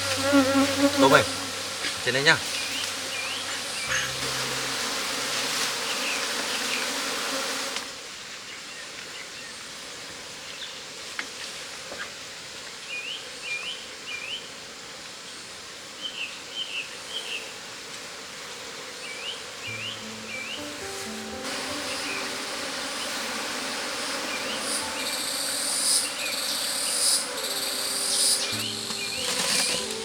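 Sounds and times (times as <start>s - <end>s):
bees humming: 0.0s - 7.8s, 18.6s - 30.0s
bird chirping: 19.2s - 20.7s.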